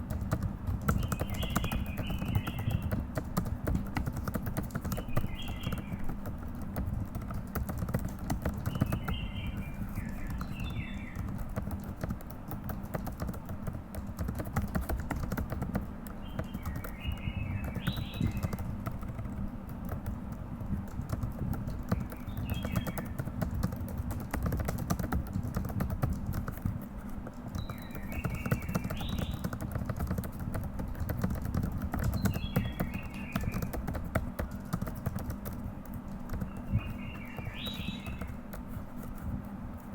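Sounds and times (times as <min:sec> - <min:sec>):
fast typing on keyboard: 0:00.0 - 0:39.9
bird chirping: 0:00.1 - 0:06.6, 0:07.4 - 0:12.0, 0:16.1 - 0:19.4, 0:21.7 - 0:24.3, 0:27.4 - 0:30.3, 0:30.9 - 0:35.5, 0:36.1 - 0:39.1.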